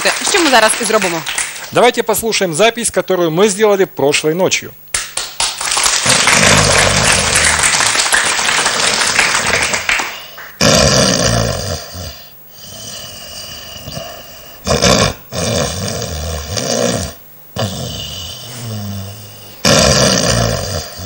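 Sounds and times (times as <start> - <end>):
woman snoring loudly: 6.0 - 8.2, 9.9 - 21.0.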